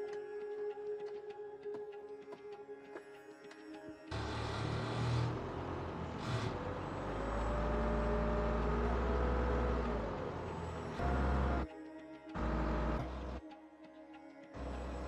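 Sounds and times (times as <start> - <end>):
heavy diesel machinery rumbling: 4.1 - 11.7, 12.4 - 13.4.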